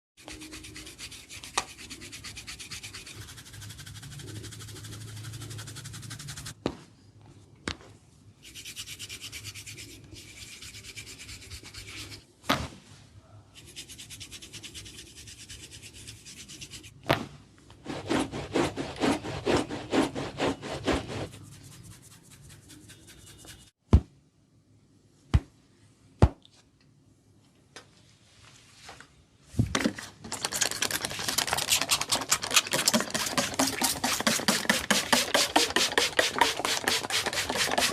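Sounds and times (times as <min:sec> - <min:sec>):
fingers scratching scalp and hair: 0:19.5 - 0:23.7, 0:30.6 - 0:37.9.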